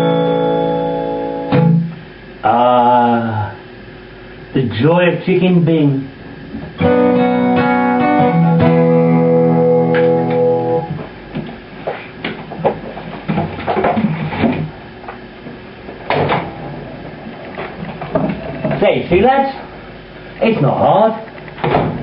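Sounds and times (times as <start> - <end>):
guitar chord ringing: 0.0 - 2.1, 6.8 - 11.1.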